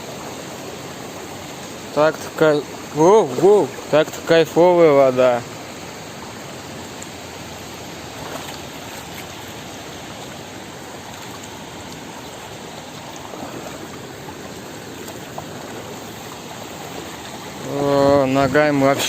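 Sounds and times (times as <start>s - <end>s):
faint splashes of wading feet: 0.0s - 19.0s
flowing stream water: 0.0s - 19.0s.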